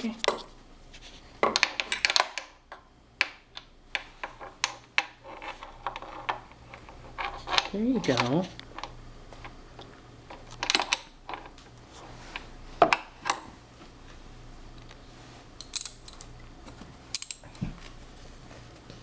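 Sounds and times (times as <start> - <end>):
metal clinking: 17.1 - 17.6.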